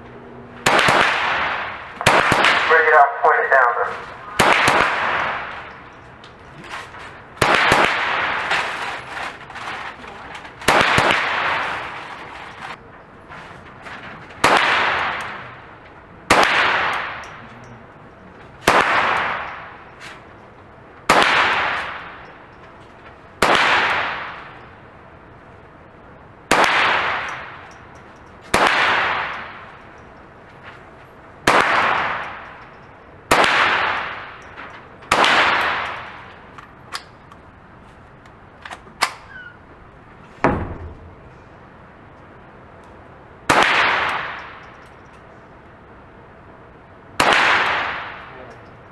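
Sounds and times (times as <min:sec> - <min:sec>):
rifle shots echoing: 0:00.6 - 0:10.0, 0:10.6 - 0:12.8, 0:14.4 - 0:17.4, 0:18.6 - 0:20.4, 0:21.0 - 0:22.7, 0:23.3 - 0:24.8, 0:26.5 - 0:30.8, 0:31.4 - 0:37.3, 0:43.5 - 0:45.0, 0:47.2 - 0:48.5.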